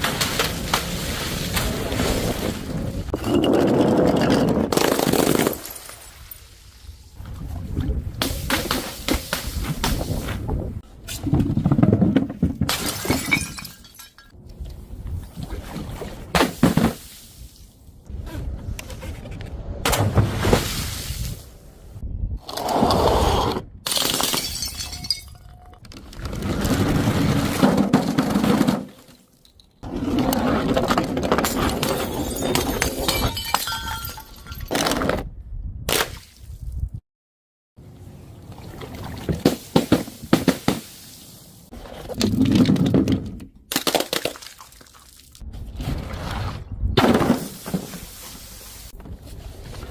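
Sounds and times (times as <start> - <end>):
glass bottles shattering: 12.7 - 14.4, 23.9 - 25.8, 31.4 - 34.8.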